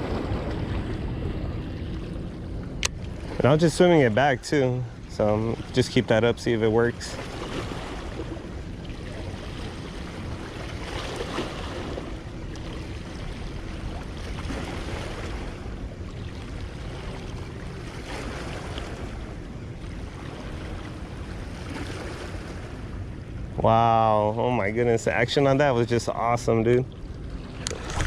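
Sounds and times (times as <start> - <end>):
wind on microphone: 0.0 - 12.1, 27.4 - 28.0
small waves lapping: 0.0 - 28.0.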